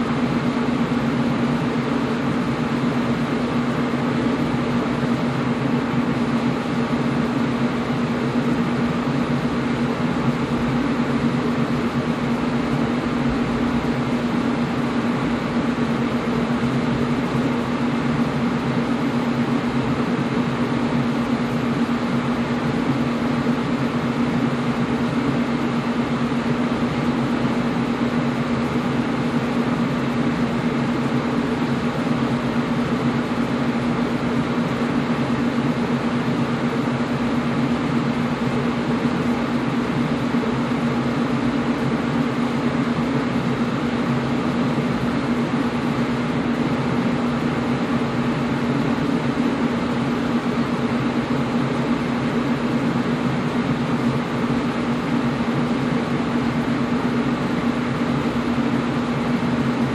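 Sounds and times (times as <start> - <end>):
air conditioner running: 0.0 - 59.9.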